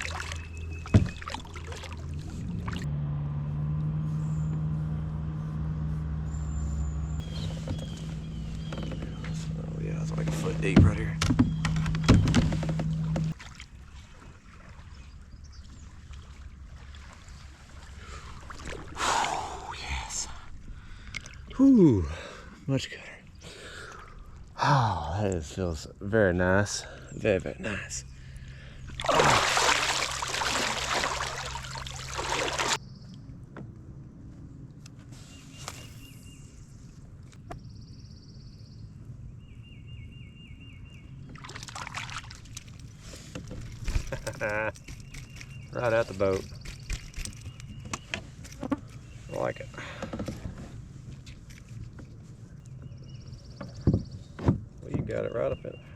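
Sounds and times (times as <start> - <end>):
birds chirping and trilling: 0.0 - 2.2, 4.1 - 13.4, 19.4 - 33.4, 35.2 - 55.9
water splashing: 0.0 - 2.9, 12.9 - 19.7, 28.9 - 32.8, 41.3 - 43.0
water rumbling around kayak: 0.0 - 6.2, 6.9 - 19.7, 28.1 - 32.8, 41.1 - 55.9
low steady rumble: 0.0 - 18.4
light wind: 0.0 - 55.9.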